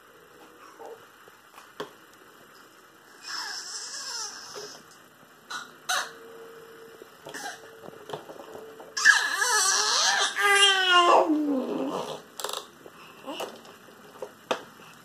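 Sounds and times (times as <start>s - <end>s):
child squealing: 3.2s - 4.6s, 9.0s - 11.3s.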